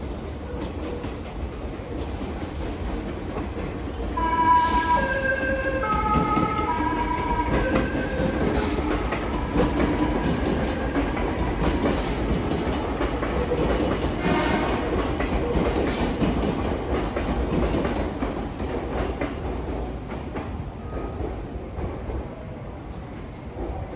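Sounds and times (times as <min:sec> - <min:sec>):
train musical horn melody: 0:04.2 - 0:11.0, 0:14.2 - 0:15.0.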